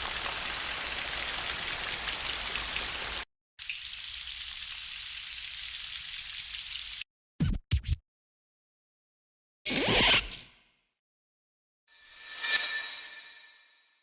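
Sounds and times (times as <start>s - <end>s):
rain hissing: 0.0s - 3.2s.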